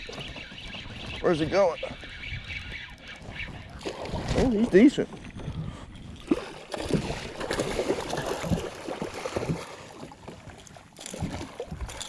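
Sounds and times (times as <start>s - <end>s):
water splashing: 3.1s - 5.3s, 6.2s - 12.0s.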